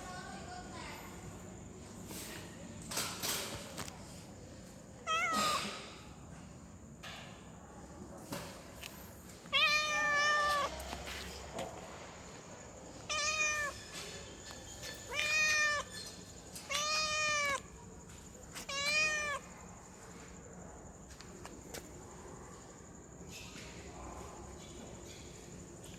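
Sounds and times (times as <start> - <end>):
cat meowing: 5.0 - 5.7, 9.5 - 10.8, 13.0 - 13.8, 15.0 - 15.9, 16.6 - 17.7, 18.6 - 19.5.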